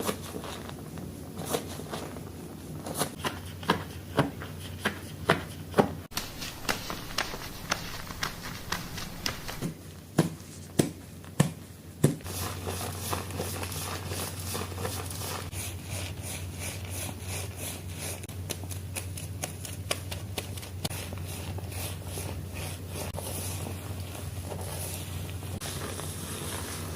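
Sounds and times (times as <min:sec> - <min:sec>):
fingers scratching through hair: 0:06.1 - 0:09.8, 0:12.2 - 0:26.9.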